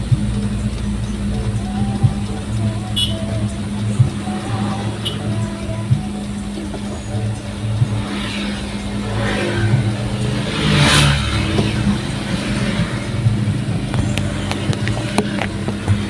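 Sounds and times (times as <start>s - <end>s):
vehicle engine running: 0.0s - 16.0s
vehicle passing close by: 6.9s - 16.0s.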